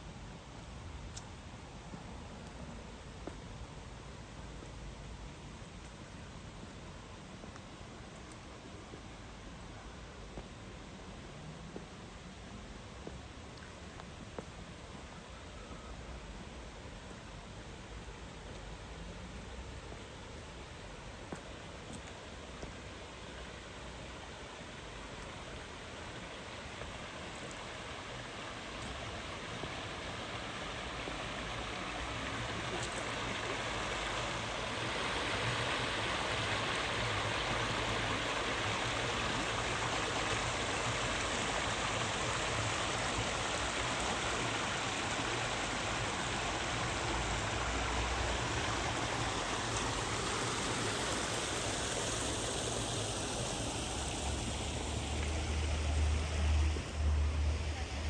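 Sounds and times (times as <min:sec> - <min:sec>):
stream water rushing: 0:20.4 - 0:58.0.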